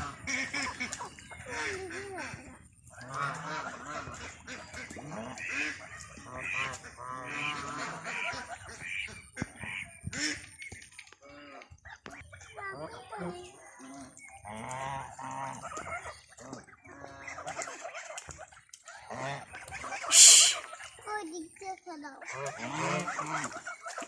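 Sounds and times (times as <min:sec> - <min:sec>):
waterfowl honking: 0:00.0 - 0:21.1, 0:22.2 - 0:24.0.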